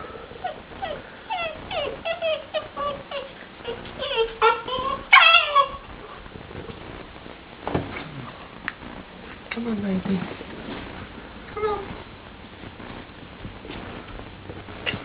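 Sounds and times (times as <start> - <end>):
puppy whimpering: 0.4 - 6.2, 11.6 - 11.9.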